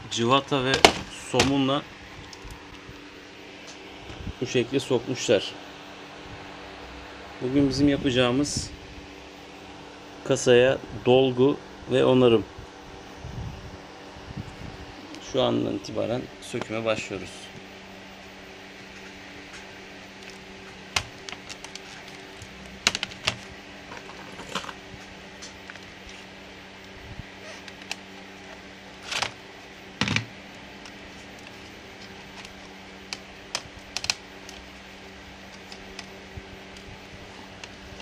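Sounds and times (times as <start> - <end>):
low hum: 0.0 - 38.0.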